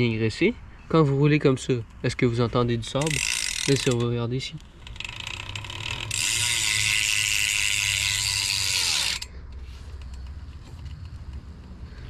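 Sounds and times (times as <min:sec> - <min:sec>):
bicycle wheel ratcheting whir: 0:02.8 - 0:12.0.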